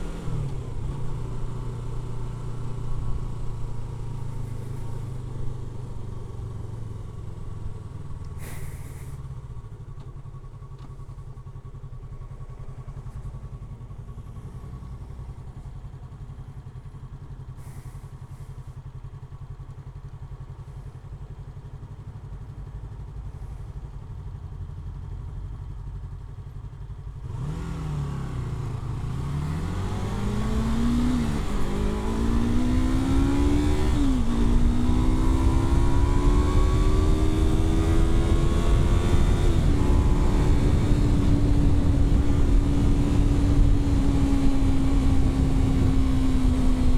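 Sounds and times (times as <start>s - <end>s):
motorcycle engine revving: 27.2s - 46.9s.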